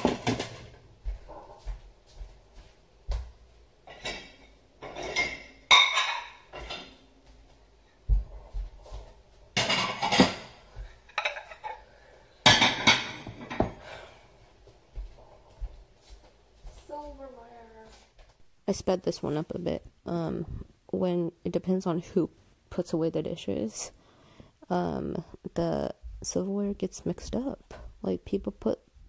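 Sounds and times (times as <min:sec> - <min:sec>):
dishes and cutlery clattering: 0:00.0 - 0:00.8, 0:03.8 - 0:07.0, 0:09.6 - 0:11.8, 0:12.4 - 0:13.8.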